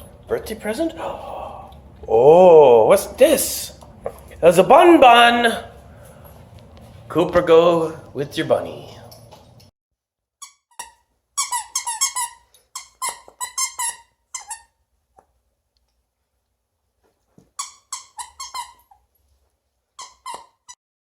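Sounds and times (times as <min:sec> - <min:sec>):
squeaky toy squeaking: 0:10.4 - 0:14.8, 0:17.6 - 0:19.1, 0:20.0 - 0:20.8.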